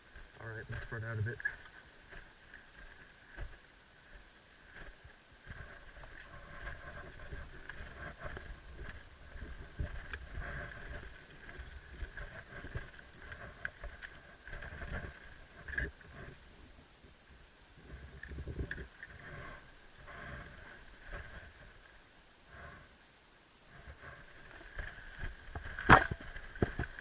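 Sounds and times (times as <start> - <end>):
rustling movement: 0.0 - 16.5, 23.7 - 27.0
low rumble on microphone: 0.0 - 23.0.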